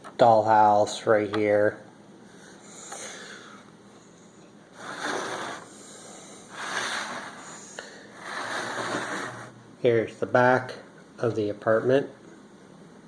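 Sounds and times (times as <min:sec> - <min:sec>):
person breathing: 0:02.2 - 0:04.2, 0:04.8 - 0:08.8.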